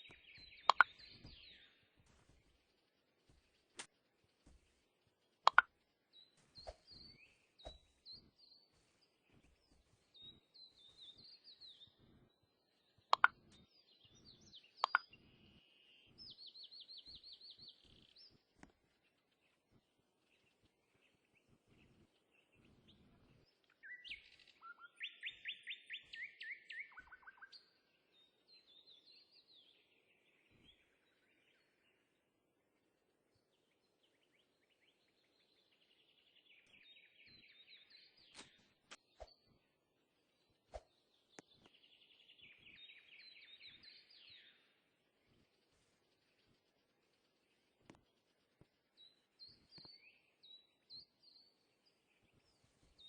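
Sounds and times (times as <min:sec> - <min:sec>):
small birds trilling: 0:00.0 - 0:32.0.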